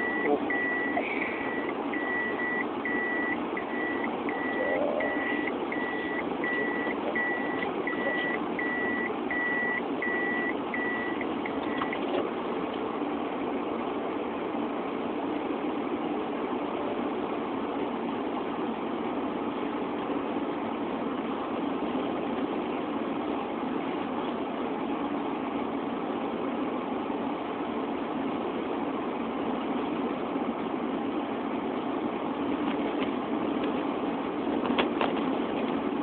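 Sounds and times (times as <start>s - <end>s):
vehicle reversing alarm beeping: 0.0s - 12.0s
engines running: 0.0s - 13.0s.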